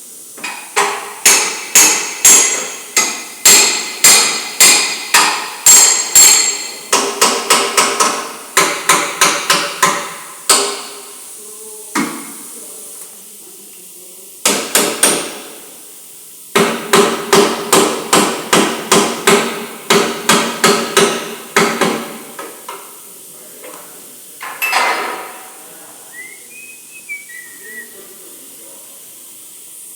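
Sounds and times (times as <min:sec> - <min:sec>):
hammer on sheet metal: 0:00.8 - 0:11.0, 0:14.4 - 0:15.4, 0:16.6 - 0:22.2.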